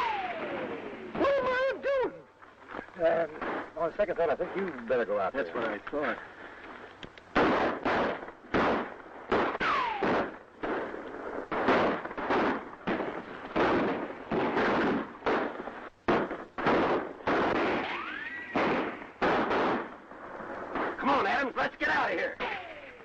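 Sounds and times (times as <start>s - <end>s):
echoing gunshots: 0.0s - 1.3s, 7.3s - 23.0s
ricochet whine: 0.0s - 3.7s, 7.4s - 20.0s, 22.4s - 23.0s.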